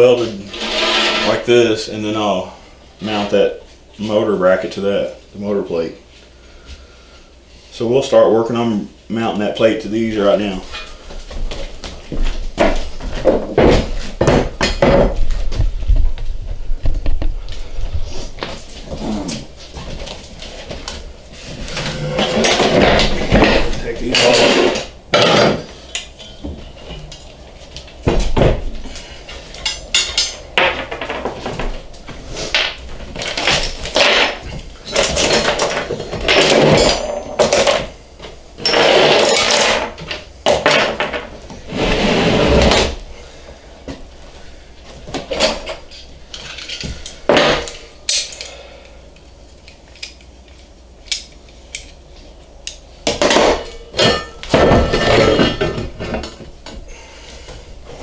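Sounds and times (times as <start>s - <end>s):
metal on metal clanks: 29.6s - 31.2s, 53.3s - 56.3s.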